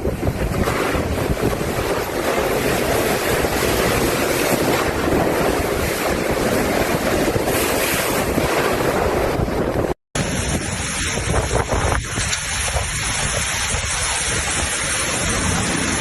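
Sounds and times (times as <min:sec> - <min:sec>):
water rushing: 0:00.0 - 0:16.0
wind buffeting microphone: 0:00.0 - 0:16.0.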